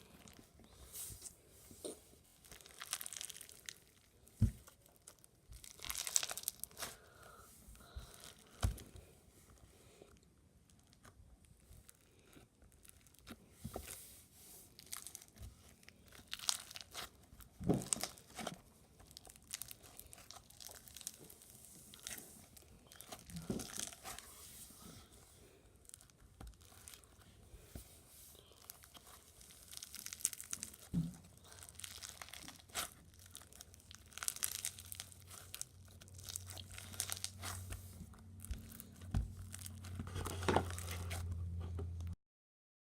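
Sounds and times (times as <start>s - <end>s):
slime squished by hands: 1.0s - 7.1s, 12.7s - 25.2s, 25.8s - 41.3s
low steady hum: 3.4s - 42.2s
crackles and pops: 28.6s - 41.0s.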